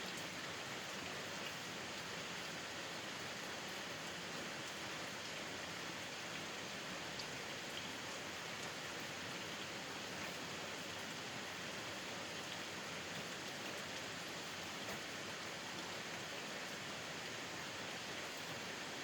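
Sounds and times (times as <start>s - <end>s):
steady rain hiss: 0.0s - 19.0s
faint raindrop ticks: 7.1s - 8.8s, 12.3s - 16.8s.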